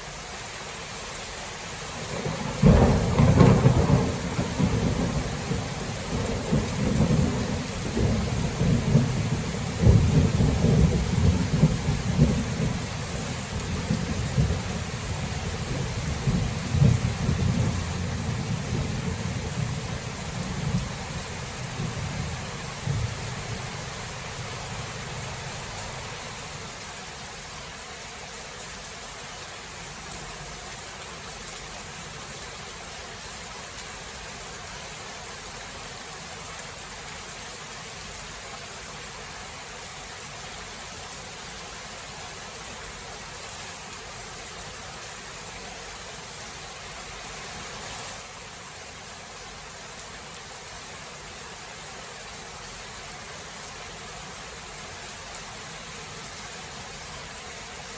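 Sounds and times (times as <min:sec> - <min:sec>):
steady rain hiss: 0:00.0 - 0:57.9
low thunder rumble: 0:02.1 - 0:26.4.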